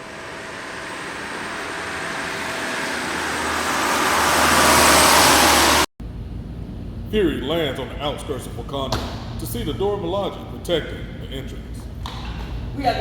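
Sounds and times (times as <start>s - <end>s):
engine roar approaching: 0.0s - 13.0s.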